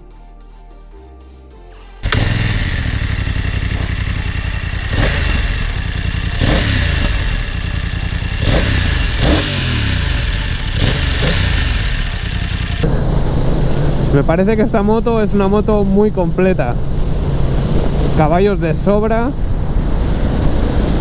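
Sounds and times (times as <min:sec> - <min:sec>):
motorcycle engine revving: 0:02.0 - 0:14.2
steady rushing noise: 0:02.0 - 0:21.0.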